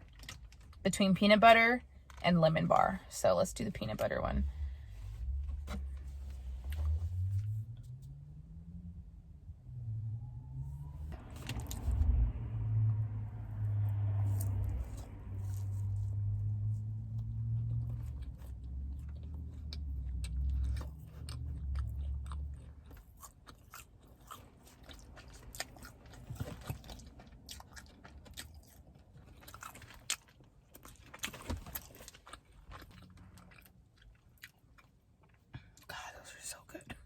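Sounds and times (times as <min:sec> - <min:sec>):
low steady rumble: 0:00.0 - 0:37.0
person chewing: 0:17.1 - 0:35.9.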